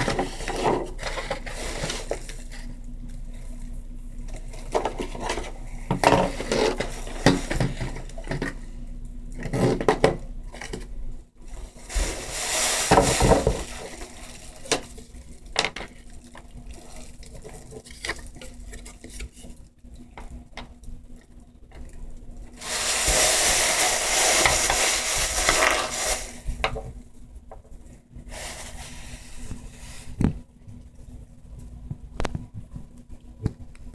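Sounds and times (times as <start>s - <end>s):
scraping or rustling: 0.0s - 2.8s, 4.3s - 8.6s, 11.5s - 15.4s, 22.6s - 26.7s, 27.8s - 30.4s.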